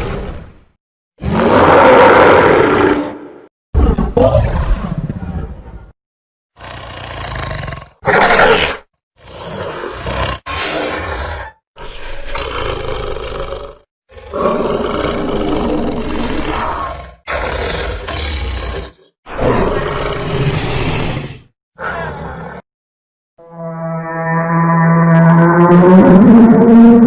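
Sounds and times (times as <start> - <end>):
roaring dragon creature calls: 1.2 - 4.8, 23.5 - 27.0.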